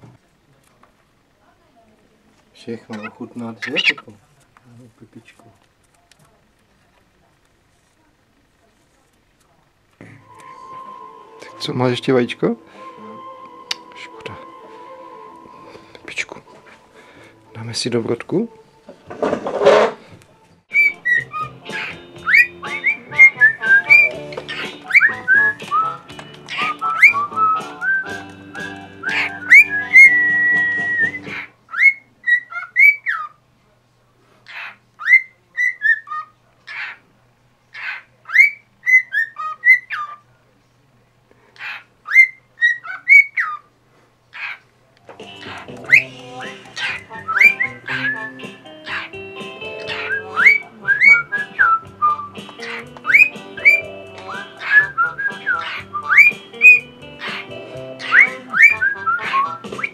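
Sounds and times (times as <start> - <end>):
music: 10.0 - 31.4, 45.0 - 59.9
bird chirps: 20.7 - 33.3, 45.3 - 59.9
cockatiel whistling: 20.7 - 33.3, 45.3 - 59.9.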